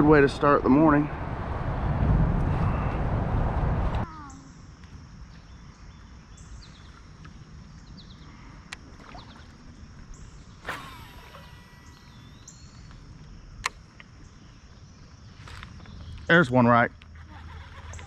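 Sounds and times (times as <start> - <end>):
low outdoor rumble: 0.0 - 18.0
high bird chirps: 10.2 - 13.0.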